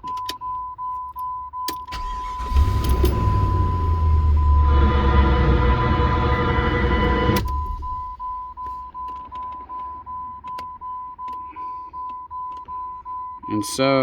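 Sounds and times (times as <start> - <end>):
car engine running: 1.9 - 8.5.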